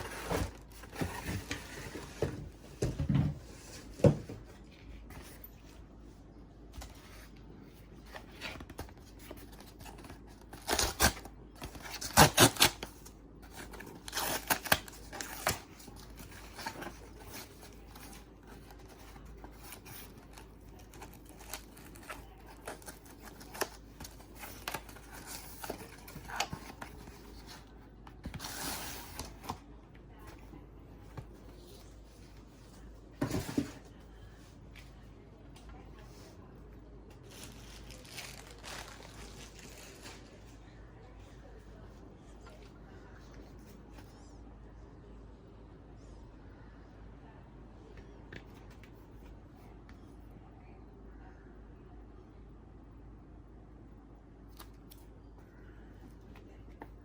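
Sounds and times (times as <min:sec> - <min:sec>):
wrapping tearing and crinkling: 0:37.3 - 0:40.4.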